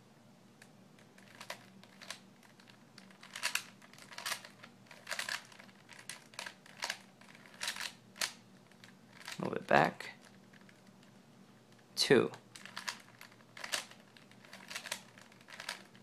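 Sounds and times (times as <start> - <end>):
puzzle cube layers clicking: 12.6 - 16.0.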